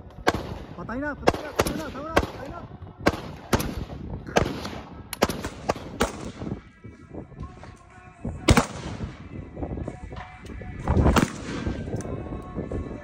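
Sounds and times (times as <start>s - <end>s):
gunshots: 0.2s - 6.5s, 8.4s - 9.2s, 11.0s - 11.9s.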